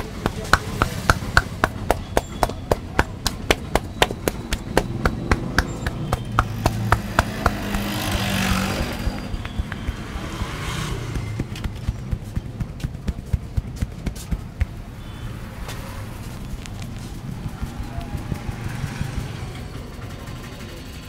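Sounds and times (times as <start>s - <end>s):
hands slapping in head massage: 0.0s - 14.9s
passing traffic: 0.0s - 21.0s.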